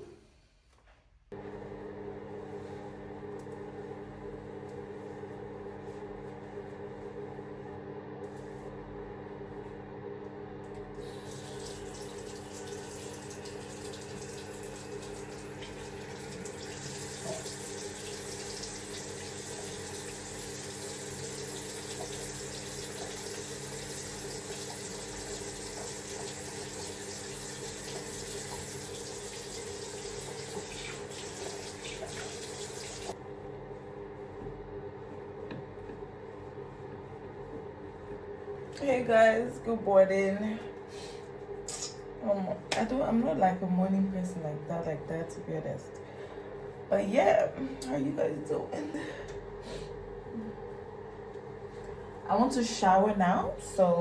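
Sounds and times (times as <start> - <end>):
tap water running into sink: 11.0 - 33.2.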